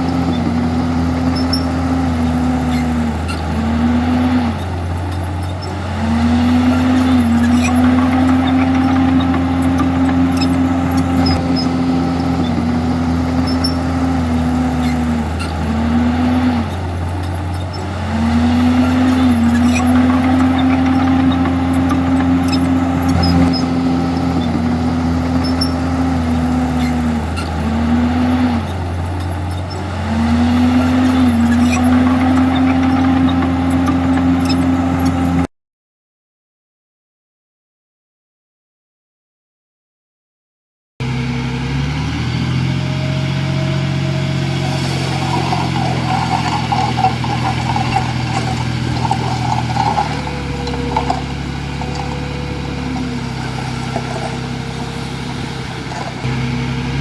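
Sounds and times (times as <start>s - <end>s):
bulldozer diesel engine: 0.0s - 35.5s, 41.0s - 57.0s.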